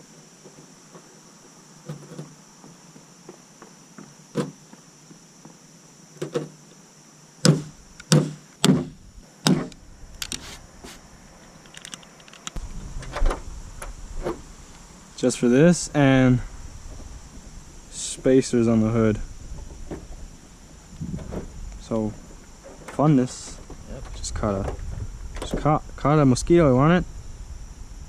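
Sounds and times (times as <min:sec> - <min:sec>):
crickets chirring: 0:00.0 - 0:28.0
clunks and knocks on car: 0:07.4 - 0:09.7
low rumble: 0:12.6 - 0:22.6, 0:23.4 - 0:28.0.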